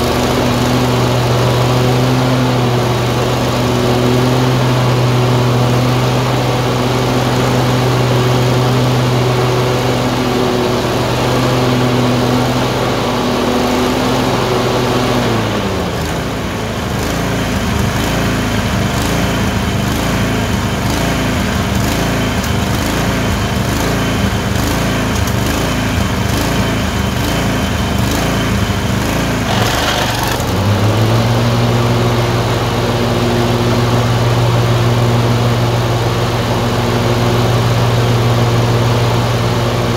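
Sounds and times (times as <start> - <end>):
engine running with surging misfire: 0.0 - 39.9.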